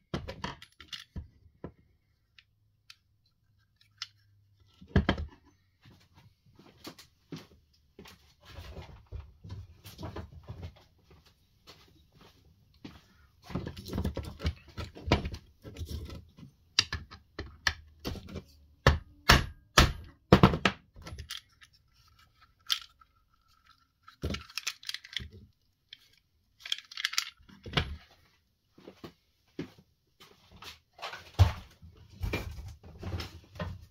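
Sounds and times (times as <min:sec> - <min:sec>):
plastic and metal parts clicking: 0:00.1 - 0:05.4, 0:20.9 - 0:28.1.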